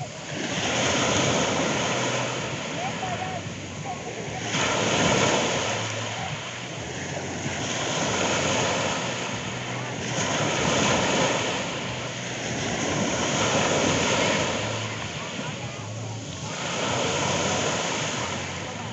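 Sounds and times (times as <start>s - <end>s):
sea waves washing onto shore: 0.0s - 18.9s.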